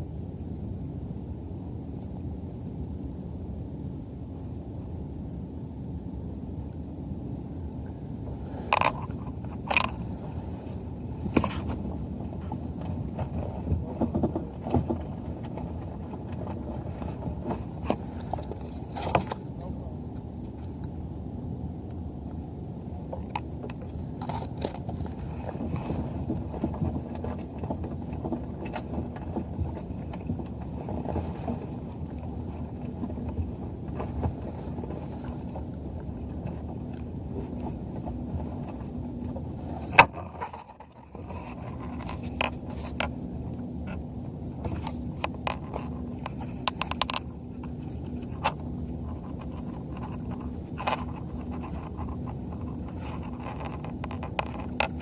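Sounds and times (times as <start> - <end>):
muffled rumble of wind and water: 0.0 - 55.0
small clicks and knocks: 7.7 - 11.8, 36.4 - 55.0.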